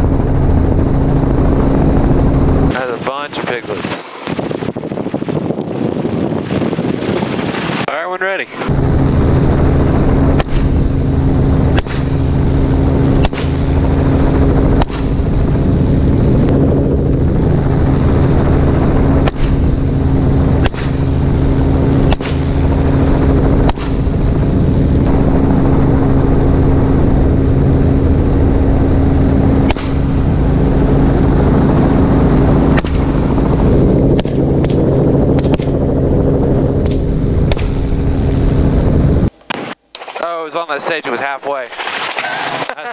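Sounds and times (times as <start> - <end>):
helicopter running: 0.0 - 42.9
rifle shots: 22.0 - 22.6, 23.6 - 24.1.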